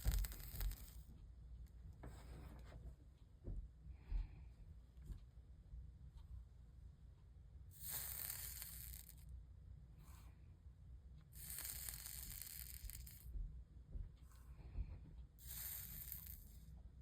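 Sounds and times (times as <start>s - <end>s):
soldering iron sizzling: 0.0s - 1.1s, 7.8s - 9.2s, 11.4s - 13.3s, 15.4s - 16.6s.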